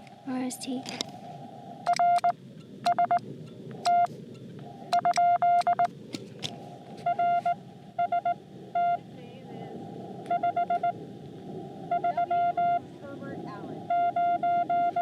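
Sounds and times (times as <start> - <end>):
radio receiver hiss: 0.0 - 15.0
morse code beeps: 1.8 - 3.2, 3.8 - 4.1, 4.9 - 5.9, 7.0 - 9.0, 10.3 - 11.0, 11.9 - 12.9, 13.9 - 15.0.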